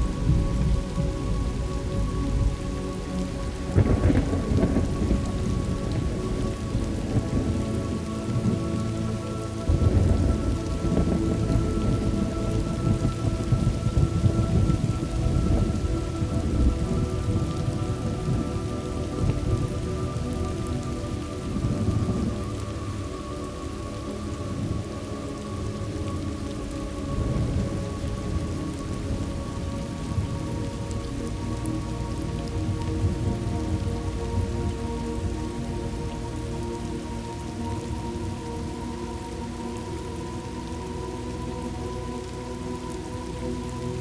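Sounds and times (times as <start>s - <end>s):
steady rain: 0.0s - 44.0s
rolling thunder: 3.7s - 8.8s, 9.7s - 22.4s.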